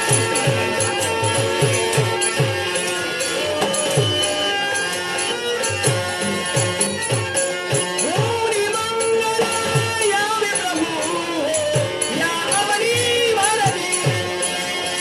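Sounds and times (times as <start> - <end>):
jingling percussion: 0.0 - 15.0.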